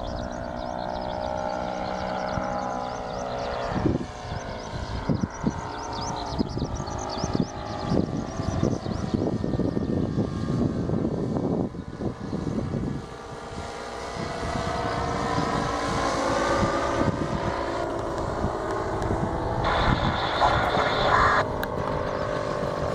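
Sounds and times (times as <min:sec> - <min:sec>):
propeller engine running: 0:00.0 - 0:22.9
wind buffeting microphone: 0:00.0 - 0:22.9
high whine: 0:17.8 - 0:22.9.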